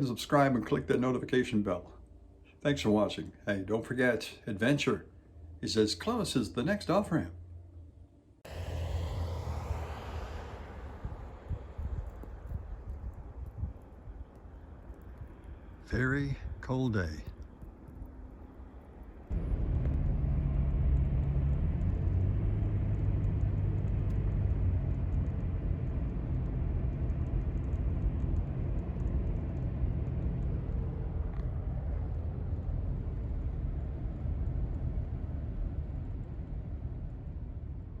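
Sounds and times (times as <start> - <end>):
vehicle engine rumble: 8.5 - 38.0.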